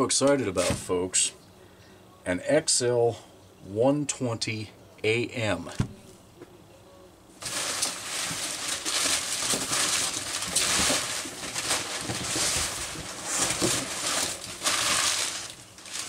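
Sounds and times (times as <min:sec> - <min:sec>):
loud crackles: 0:07.4 - 0:16.0
packing material rustling: 0:07.4 - 0:16.0.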